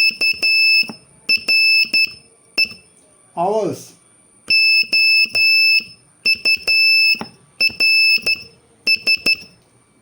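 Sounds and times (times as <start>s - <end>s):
high-pitched morse code beeps: 0.0s - 2.9s, 4.5s - 9.6s.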